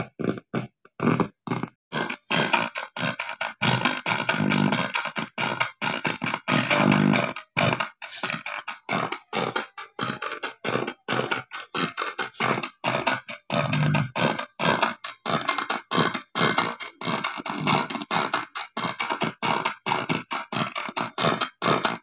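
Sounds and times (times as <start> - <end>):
harsh growling distorted audio: 3.1 - 19.6.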